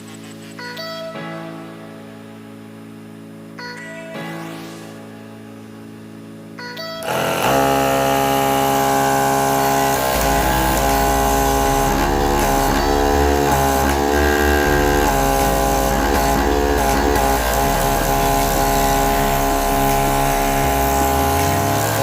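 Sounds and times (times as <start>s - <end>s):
guitar chords over bass line: 7.0s - 22.0s.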